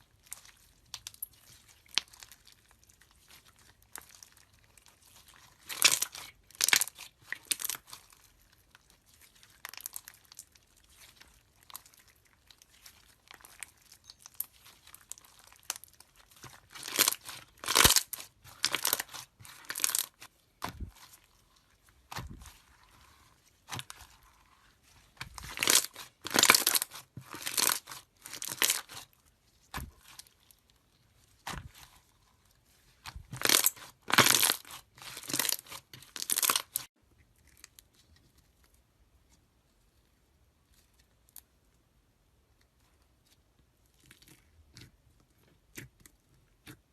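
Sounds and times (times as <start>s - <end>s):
slime crackling and popping: 0.1s - 30.6s, 33.0s - 36.9s.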